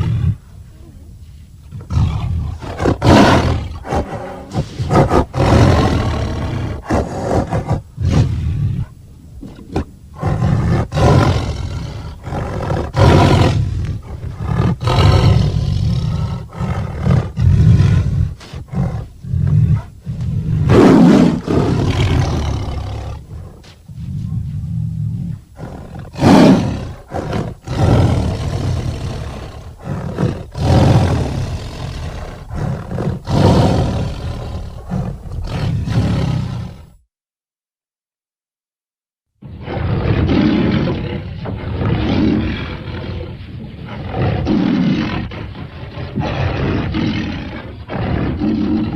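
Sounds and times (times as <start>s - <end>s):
cartoon animal growls and roars: 25.2s - 37.0s, 43.9s - 48.9s.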